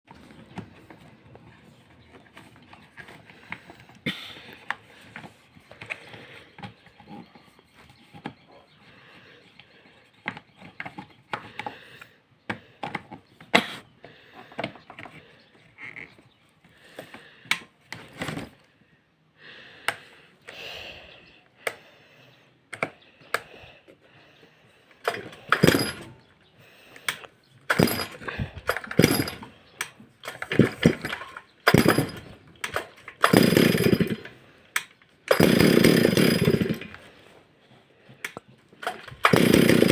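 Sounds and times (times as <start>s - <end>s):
clicks and knocks of handling: 9.6s - 18.6s, 22.7s - 24.0s, 38.1s - 39.3s
chainsaw starter cord yanked: 17.1s - 18.6s, 25.0s - 26.3s, 27.0s - 37.2s, 38.2s - 39.9s.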